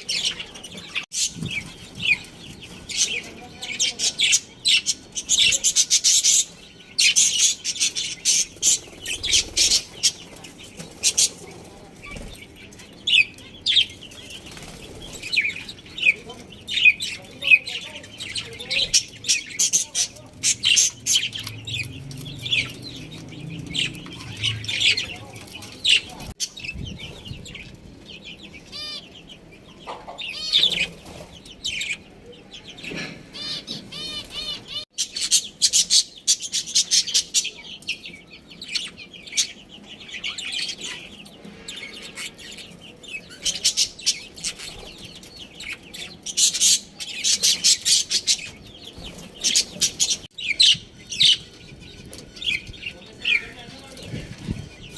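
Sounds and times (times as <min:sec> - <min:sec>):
budgerigars chirping and chattering: 0:00.0 - 0:54.9.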